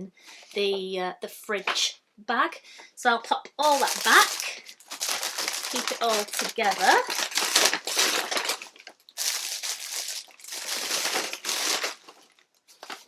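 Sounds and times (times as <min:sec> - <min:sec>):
food packaging crinkling: 0:03.6 - 0:13.0.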